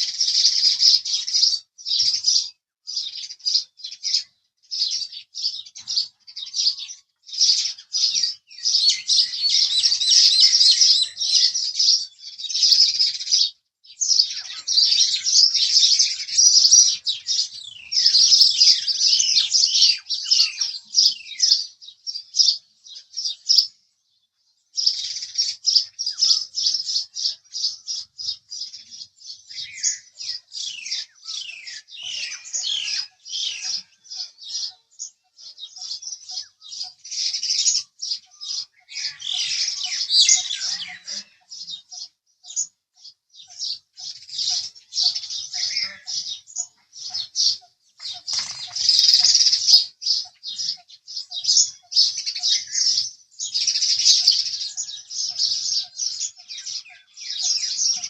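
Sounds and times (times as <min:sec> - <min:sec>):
sparrows chirping: 0:00.0 - 0:58.0.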